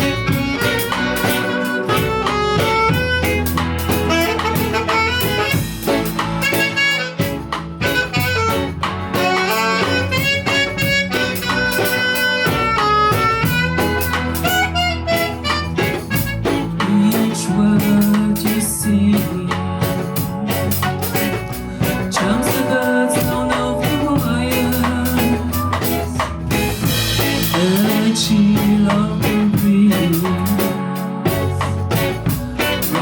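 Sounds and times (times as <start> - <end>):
live reggae band playing: 0.0 - 33.0.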